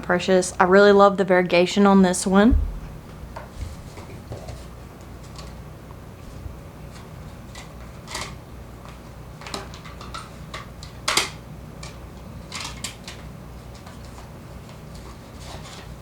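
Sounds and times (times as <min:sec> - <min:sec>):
sharp crackle or knock: 0:02.5 - 0:03.8.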